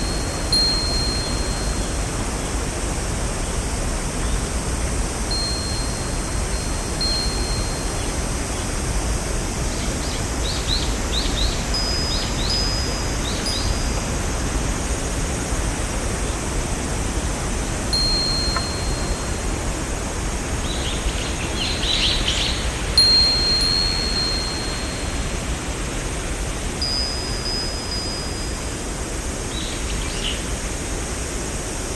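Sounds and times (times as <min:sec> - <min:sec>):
steady rushing hiss: 0:00.0 - 0:31.9
songbirds chirping and whistling: 0:20.6 - 0:25.0.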